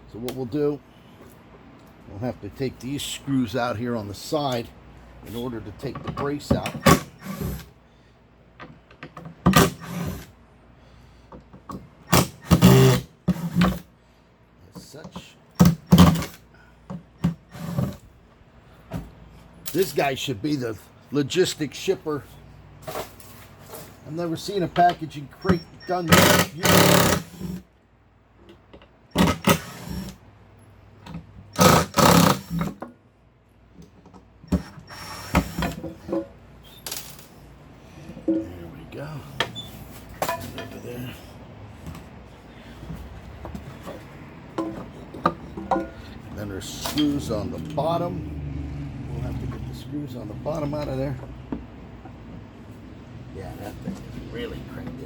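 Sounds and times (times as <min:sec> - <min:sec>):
power drill backing out screws: 0:12.1 - 0:13.8, 0:25.4 - 0:27.6, 0:31.6 - 0:32.8, 0:34.5 - 0:35.9
cordless drill running: 0:26.1 - 0:27.6, 0:31.6 - 0:32.7.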